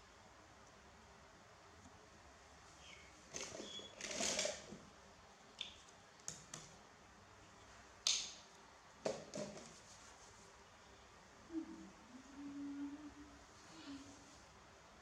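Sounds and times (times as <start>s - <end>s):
sharp clicks and snaps: 5.6s - 6.8s, 8.0s - 8.4s.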